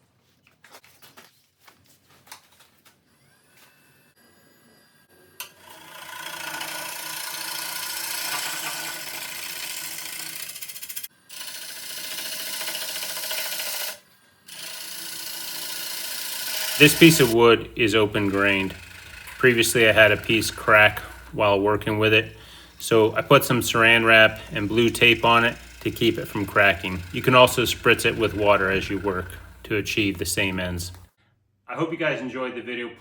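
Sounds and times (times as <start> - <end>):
lathe tool shaving wood: 5.6 - 31.1.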